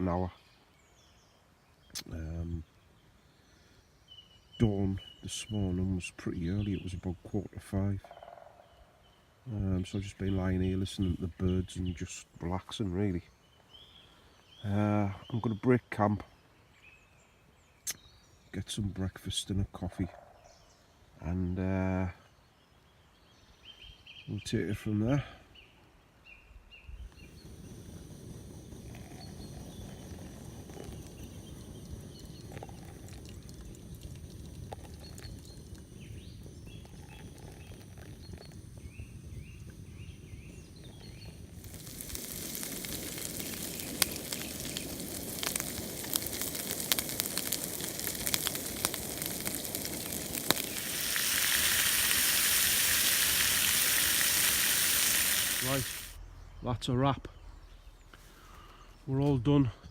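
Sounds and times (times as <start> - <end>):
birds chirping: 0.0 - 59.9
food sizzling in a pan: 27.2 - 56.2.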